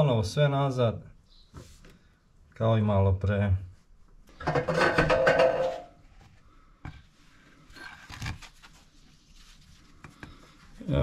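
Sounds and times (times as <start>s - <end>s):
tools and metal parts clattering: 4.4s - 6.0s.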